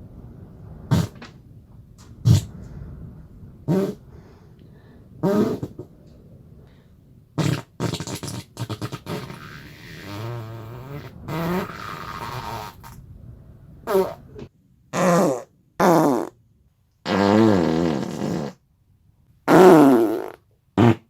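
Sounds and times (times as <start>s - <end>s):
farts: 0.9s - 1.4s, 2.2s - 2.5s, 3.7s - 4.0s, 5.2s - 5.9s, 7.4s - 13.0s, 13.9s - 16.4s, 17.0s - 18.6s, 19.5s - 21.0s.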